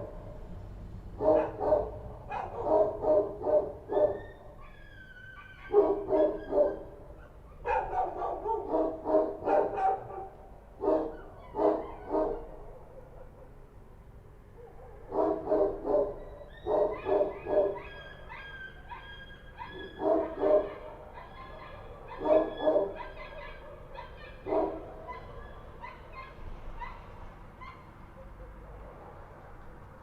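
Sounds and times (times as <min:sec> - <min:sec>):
distant dogs barking: 0:01.1 - 0:30.0
dog barking loudly: 0:01.2 - 0:13.6, 0:14.6 - 0:27.9.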